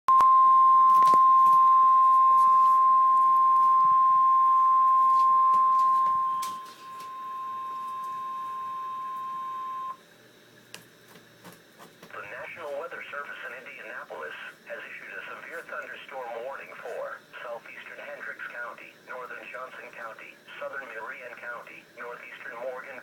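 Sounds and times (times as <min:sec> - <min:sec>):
high steady alert beep: 0:00.1 - 0:10.0.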